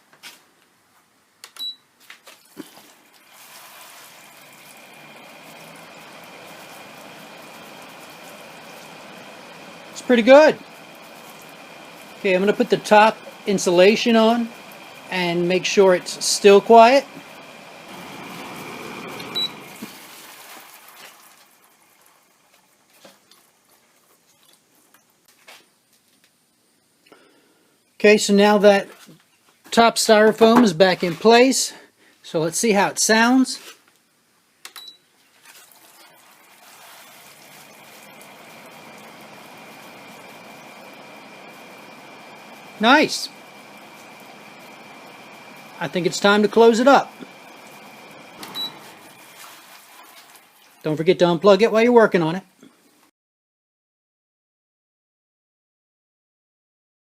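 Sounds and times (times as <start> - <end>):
air conditioner fan whooshing: 3.0 - 20.9, 35.9 - 50.2
short beep: 48.5 - 48.9.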